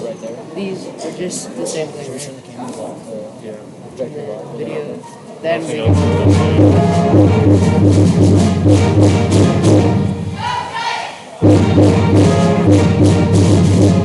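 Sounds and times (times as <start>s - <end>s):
music with brass and beat: 5.8s - 10.3s, 11.4s - 14.0s.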